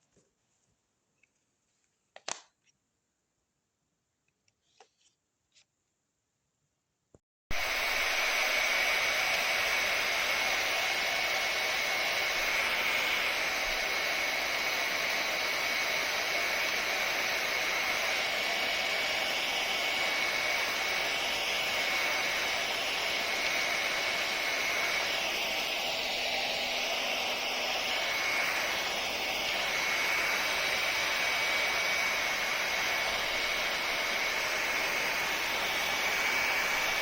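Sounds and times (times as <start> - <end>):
hair dryer running: 7.5 - 37.0.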